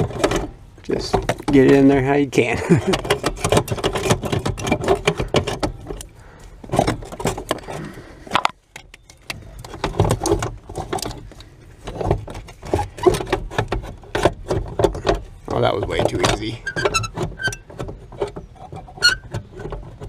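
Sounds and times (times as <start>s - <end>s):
metal clattering and knocking: 0.0s - 20.0s.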